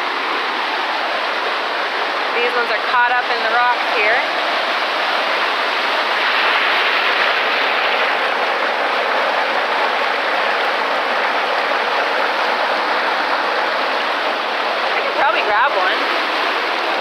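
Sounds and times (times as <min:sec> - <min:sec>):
water rushing over rocks: 0:00.0 - 0:17.0.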